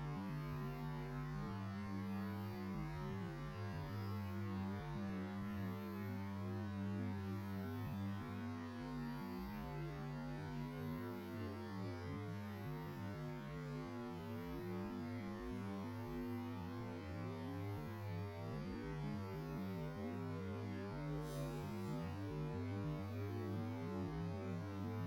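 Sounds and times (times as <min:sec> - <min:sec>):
low droning hum with wavering tones: 0:12.1 - 0:25.0.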